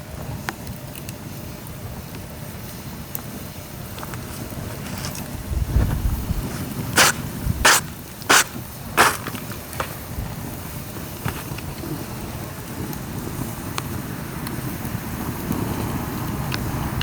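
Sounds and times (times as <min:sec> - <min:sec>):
rain hissing: 0:02.8 - 0:17.0
dry bamboo cracking: 0:03.9 - 0:05.4, 0:06.5 - 0:10.0.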